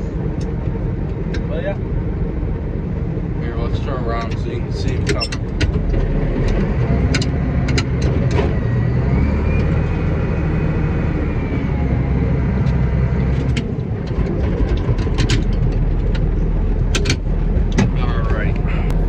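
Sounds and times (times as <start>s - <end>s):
tractor engine running: 0.0s - 19.0s
faint whine: 18.0s - 19.0s.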